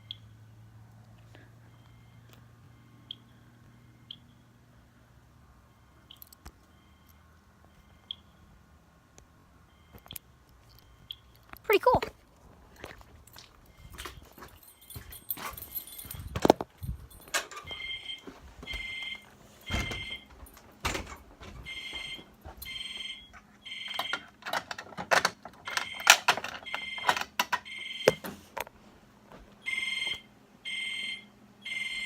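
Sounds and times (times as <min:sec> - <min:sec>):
fire alarm beeping: 0:17.1 - 0:24.4, 0:25.6 - 0:28.2, 0:29.6 - 0:32.0.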